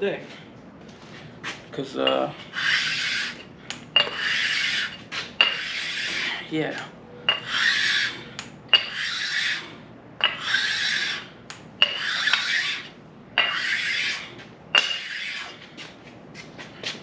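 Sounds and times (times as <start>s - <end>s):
sharpening stone rasping strokes: 2.1s - 6.4s, 7.3s - 15.7s.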